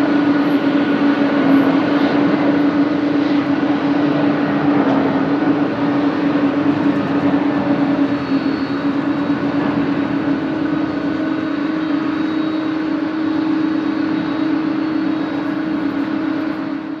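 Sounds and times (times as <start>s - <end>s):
jet engines at takeoff: 0.0s - 17.0s.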